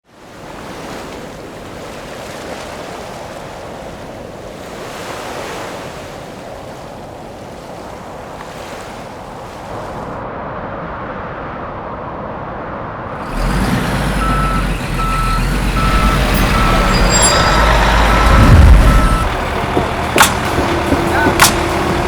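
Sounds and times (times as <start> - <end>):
waves washing onto a beach: 0.1 - 10.5.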